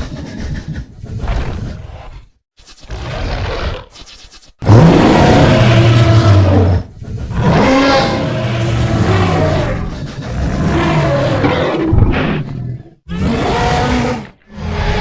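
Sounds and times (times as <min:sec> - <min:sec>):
low-pitched dinosaur roars: 0:04.6 - 0:15.0.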